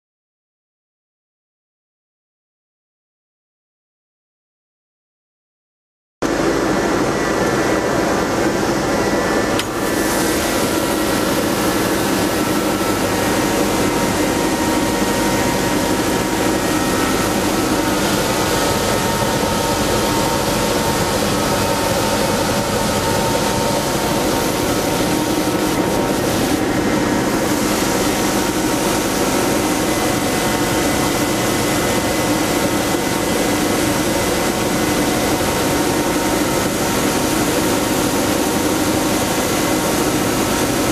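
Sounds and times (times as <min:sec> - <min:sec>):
ice edger machine drone: 0:06.2 - 0:40.9.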